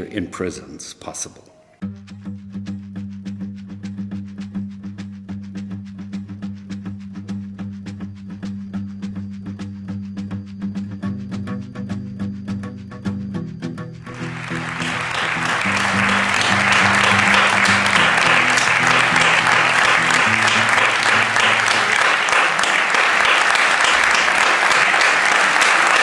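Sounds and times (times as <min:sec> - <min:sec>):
low instrumental music: 0:14.1 - 0:22.3
audience applauding: 0:14.1 - 0:26.0.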